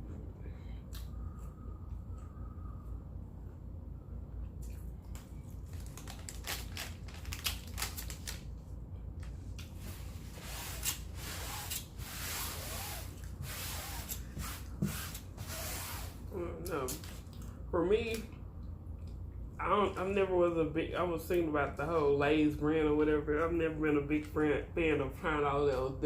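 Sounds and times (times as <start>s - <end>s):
chewing and mouth smacking: 4.3s - 6.1s, 17.2s - 17.6s.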